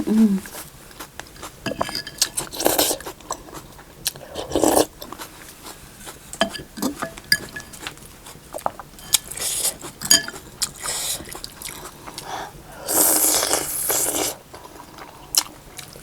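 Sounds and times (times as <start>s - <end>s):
person chewing food: 0.0s - 16.0s
person slurping soup: 9.3s - 10.0s, 12.8s - 14.4s.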